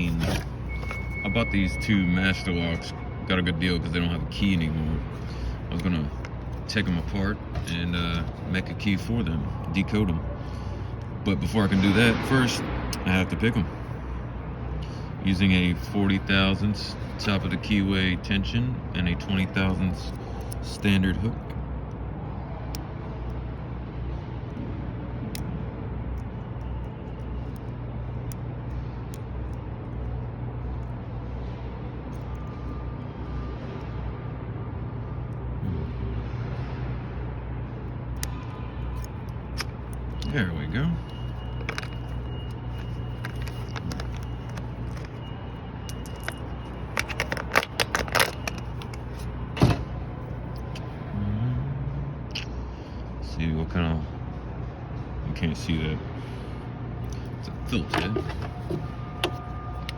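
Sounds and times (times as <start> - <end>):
lock pick clicking in padlock: 41.1 - 45.2, 45.9 - 49.2.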